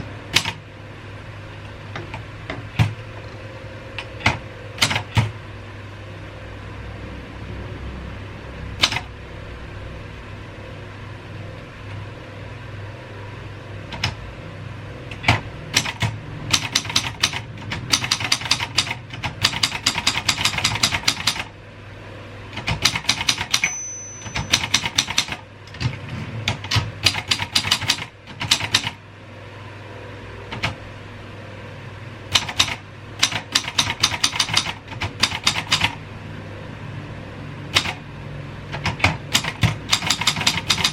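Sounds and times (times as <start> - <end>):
low steady hum: 0.0 - 19.5
manual typewriter keys clacking: 15.1 - 21.5, 22.6 - 28.9, 32.3 - 36.0, 37.7 - 38.0, 38.7 - 40.9
typewriter bell ring: 23.0 - 25.4.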